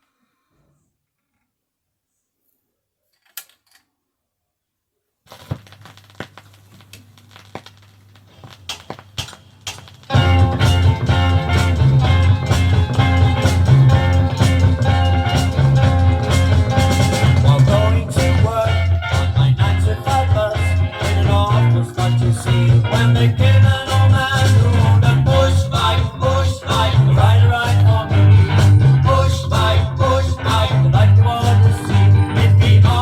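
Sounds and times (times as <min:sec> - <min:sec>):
vinyl record click: 0:05.3 - 0:11.0
vinyl crackle and clicks: 0:05.3 - 0:33.0
steady low hum: 0:08.3 - 0:33.0
guitar-led rock music: 0:10.1 - 0:33.0.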